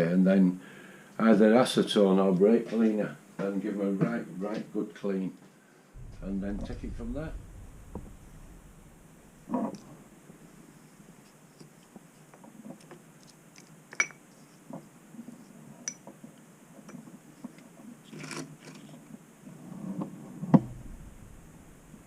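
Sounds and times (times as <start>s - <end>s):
sharp knock: 6.0s - 10.4s, 20.6s - 22.0s.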